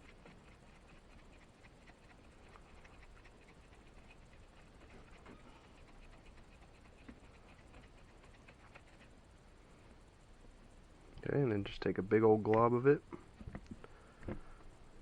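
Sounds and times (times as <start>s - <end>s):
plastic knife stirring resin: 0.0s - 9.2s.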